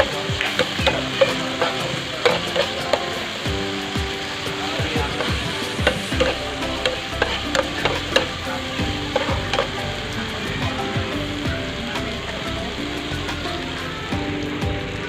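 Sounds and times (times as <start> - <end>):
utensil tapping against pan: 0.0 - 4.2
food sizzling in a pan: 0.0 - 15.0.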